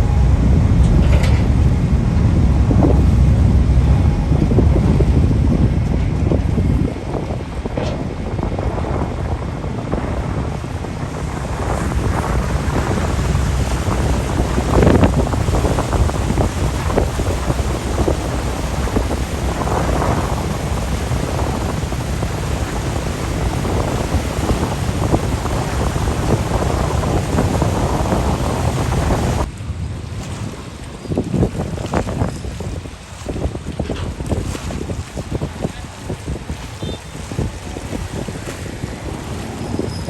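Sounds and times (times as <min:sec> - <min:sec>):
rushing water: 0:00.0 - 0:40.0
wind buffeting microphone: 0:00.0 - 0:40.0.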